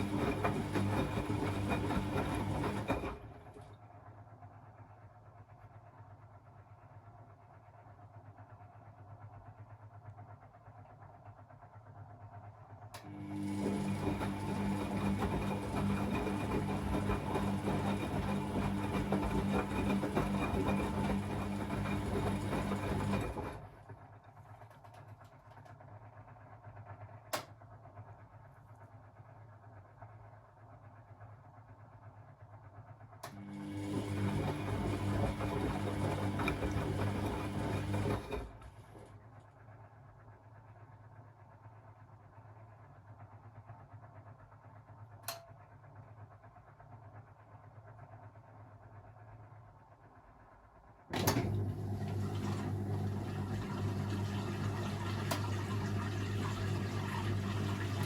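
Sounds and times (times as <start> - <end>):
washing machine motor humming: 0.0 - 3.7, 13.0 - 24.5, 33.2 - 39.2, 51.1 - 58.0.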